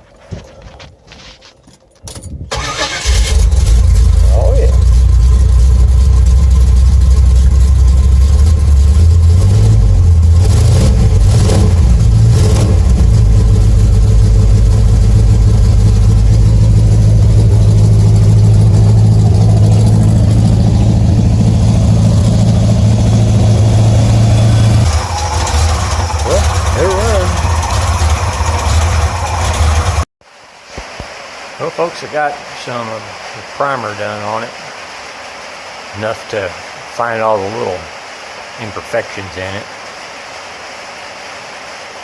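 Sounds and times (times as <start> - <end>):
truck engine idling and revving: 2.5 - 30.1.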